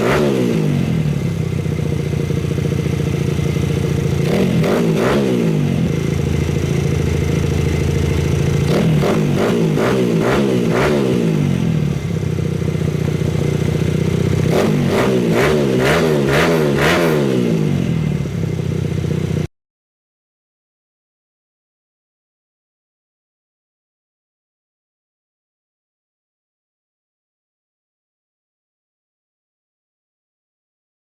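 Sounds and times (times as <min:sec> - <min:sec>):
motorcycle engine idling: 0:00.4 - 0:16.8, 0:17.5 - 0:19.5.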